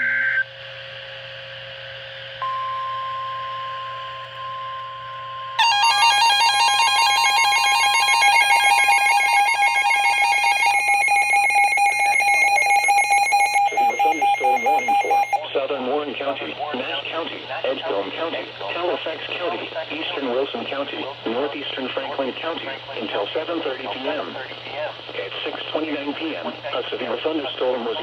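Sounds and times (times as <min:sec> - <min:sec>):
steady electronic tone: 0:05.6 - 0:15.4
warbling electronic tone: 0:05.6 - 0:15.4
person speaking announcement: 0:13.6 - 0:18.9.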